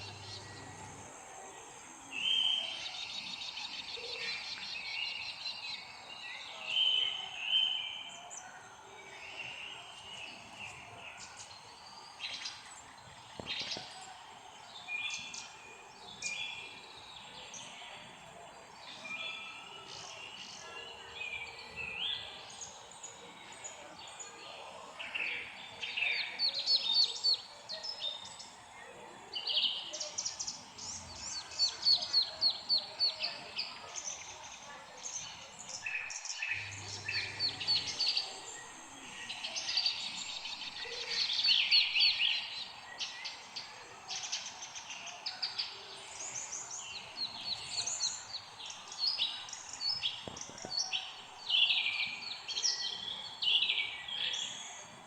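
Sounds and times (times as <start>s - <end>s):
birds chirping: 0.0s - 1.4s, 28.2s - 43.6s.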